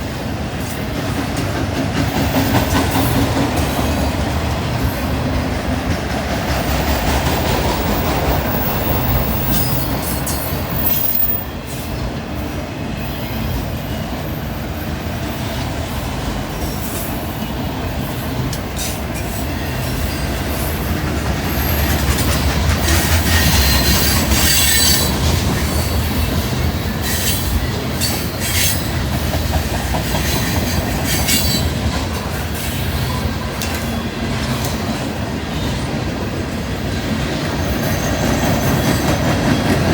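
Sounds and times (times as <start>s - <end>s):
freight train rumble: 0.0s - 39.9s
wheel squeals: 8.5s - 11.5s, 18.8s - 29.0s.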